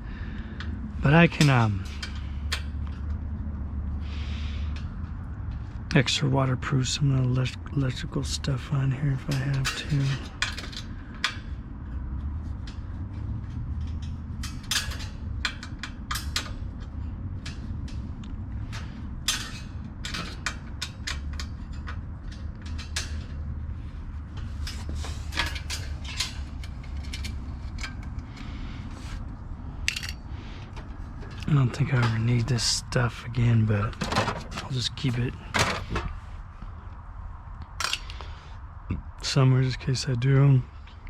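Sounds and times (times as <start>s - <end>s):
steady low rumble: 0.0s - 41.0s
tools clattering on a bike: 0.5s - 5.9s, 7.8s - 36.2s, 37.8s - 38.4s.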